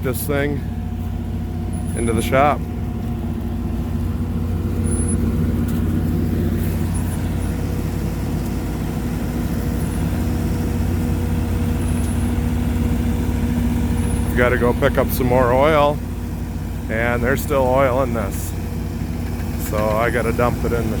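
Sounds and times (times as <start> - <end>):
loader engine running: 0.0 - 21.0.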